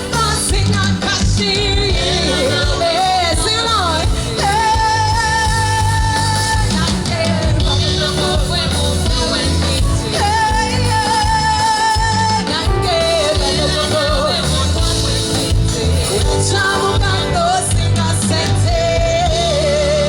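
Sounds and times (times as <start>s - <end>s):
live pop music with bass beat: 0.0s - 20.0s
person singing: 0.0s - 20.0s.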